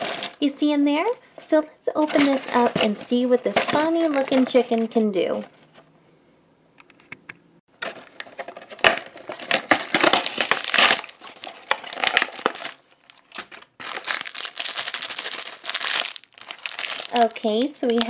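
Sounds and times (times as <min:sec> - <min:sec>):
packaging tearing and crinkling: 0:07.8 - 0:18.0.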